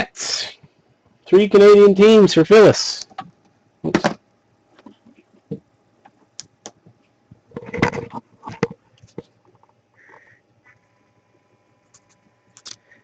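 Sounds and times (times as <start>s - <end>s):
computer keyboard and mouse clicks: 11.8s - 12.8s.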